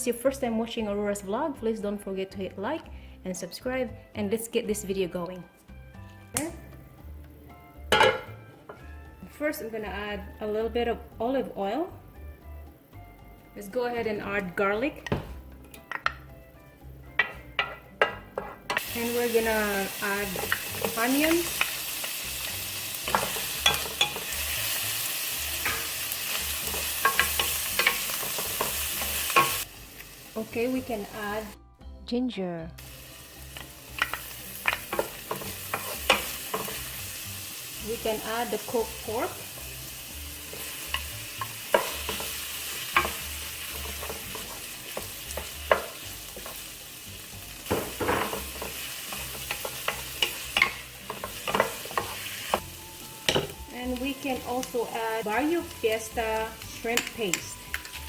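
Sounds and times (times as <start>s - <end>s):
onions sizzling in oil: 17.2s - 31.6s, 32.8s - 58.0s.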